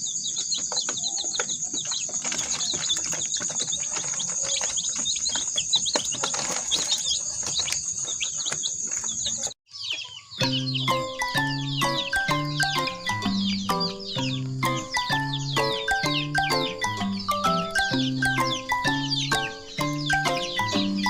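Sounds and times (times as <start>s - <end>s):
birds chirping: 0.0s - 21.0s
rustling and wing-flapping: 0.4s - 9.6s.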